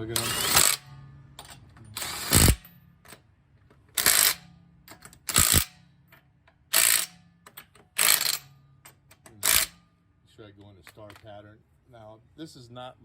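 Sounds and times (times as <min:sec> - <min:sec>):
impact gun hammering: 0:02.2 - 0:03.2.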